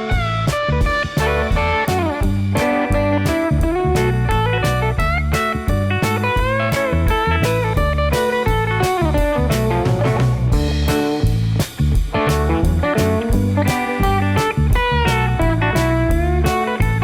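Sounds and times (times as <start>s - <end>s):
bluesy electric guitar: 0.0s - 17.0s
steady beat: 0.0s - 17.0s.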